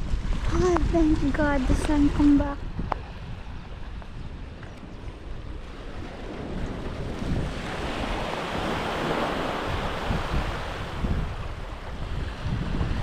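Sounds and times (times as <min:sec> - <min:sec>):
wind buffeting microphone: 0:00.0 - 0:13.0
sea wave breaking on shore: 0:05.7 - 0:13.0.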